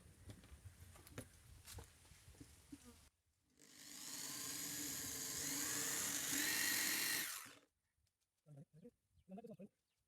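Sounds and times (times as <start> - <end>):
power tool whining on wood: 3.6 - 7.6.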